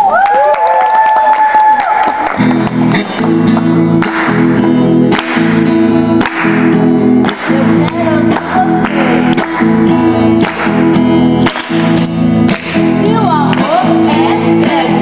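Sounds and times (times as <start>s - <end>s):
strummed acoustic guitar: 2.4s - 15.0s
woman singing: 7.3s - 9.4s, 12.9s - 15.0s.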